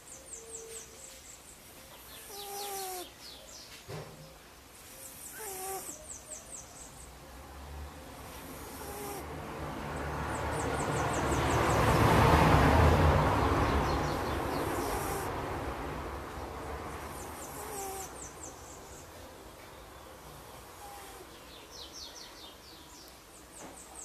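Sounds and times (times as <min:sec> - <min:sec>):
cat snoring: 0:05.2 - 0:06.0, 0:08.3 - 0:09.3, 0:14.6 - 0:15.3, 0:17.1 - 0:18.2.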